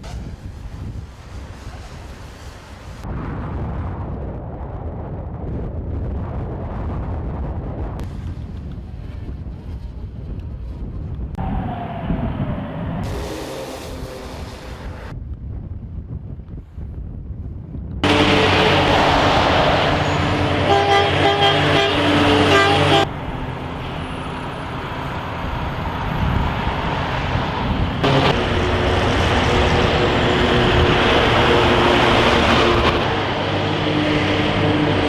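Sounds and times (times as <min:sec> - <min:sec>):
heavy vehicle engines running: 0:11.3 - 0:15.2, 0:18.0 - 0:35.0
short horn toots: 0:20.0 - 0:23.1.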